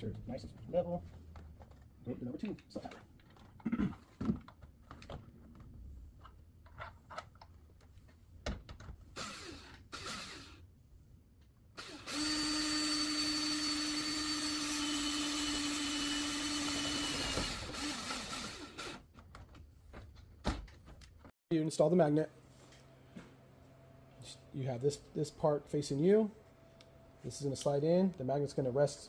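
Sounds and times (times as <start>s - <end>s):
drill running: 9.2s - 10.6s, 11.8s - 19.0s.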